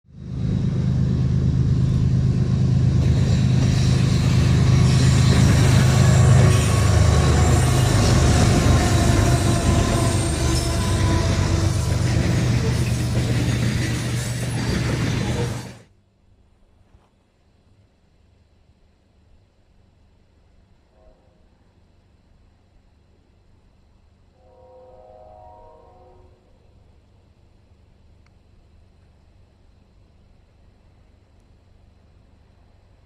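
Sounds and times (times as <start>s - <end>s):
freight train passing: 0.1s - 15.9s, 23.7s - 27.0s.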